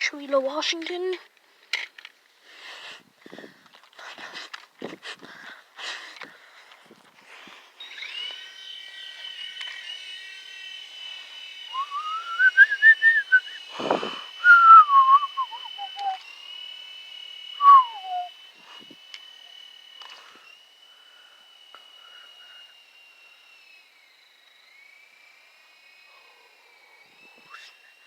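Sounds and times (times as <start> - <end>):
helicopter rotors high whine: 2.8 - 28.0
lower whine sliding in pitch: 6.8 - 26.1.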